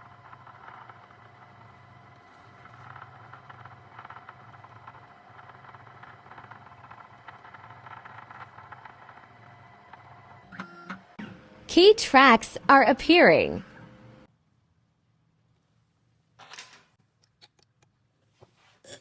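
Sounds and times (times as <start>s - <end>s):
faint motor hum: 0.0s - 14.7s.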